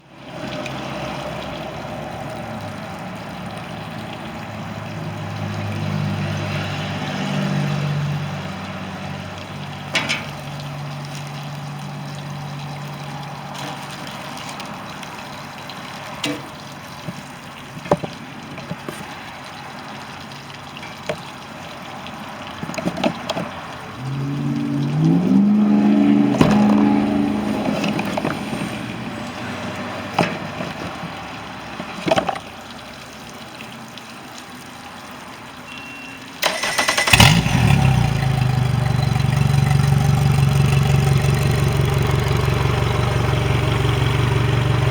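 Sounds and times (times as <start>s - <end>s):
running water: 0.0s - 44.9s
low hum: 24.0s - 29.4s.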